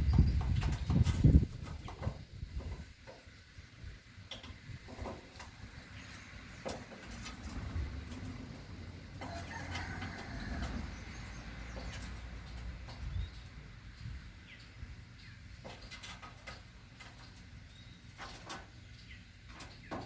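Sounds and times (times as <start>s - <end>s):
wind buffeting microphone: 0.0s - 3.0s, 9.3s - 15.0s
trees rustling: 0.0s - 20.0s.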